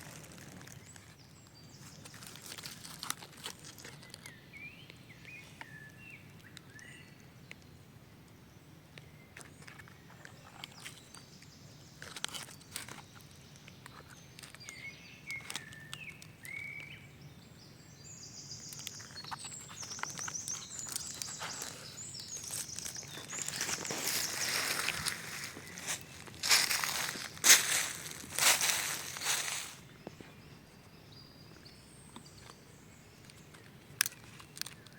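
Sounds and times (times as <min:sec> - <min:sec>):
crunching rustles on leaf litter: 0:00.0 - 0:04.4, 0:18.7 - 0:30.3
birds calling and trilling: 0:00.0 - 0:34.9.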